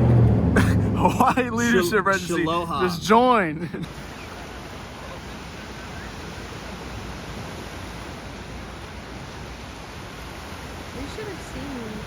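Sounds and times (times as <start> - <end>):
low rumble: 0.0 - 3.9
steady rushing noise: 0.0 - 12.0.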